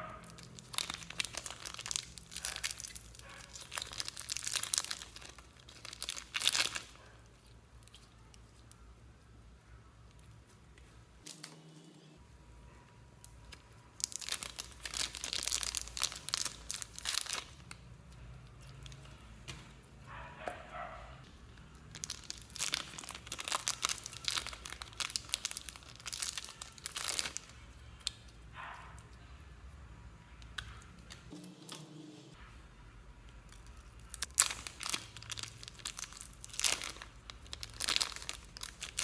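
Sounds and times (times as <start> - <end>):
slime crackling: 0.0 - 12.1, 13.2 - 19.7, 21.5 - 29.1, 33.4 - 39.0
slime squeaks: 21.9 - 28.4.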